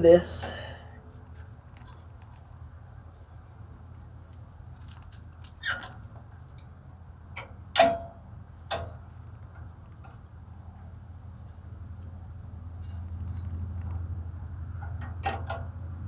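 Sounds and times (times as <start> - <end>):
steady low hum: 0.0 - 4.7.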